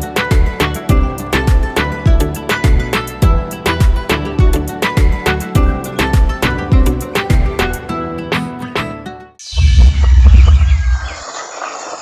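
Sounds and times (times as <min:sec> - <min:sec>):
music with plucked notes: 0:00.0 - 0:09.4
outdoor ambient noise: 0:09.4 - 0:12.0
strong low rumble: 0:09.5 - 0:11.2.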